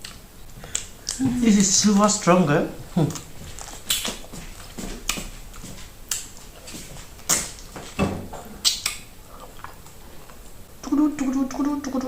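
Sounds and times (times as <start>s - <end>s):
teeth gnawing on bone: 0.0s - 1.2s, 2.8s - 7.7s, 8.6s - 10.0s.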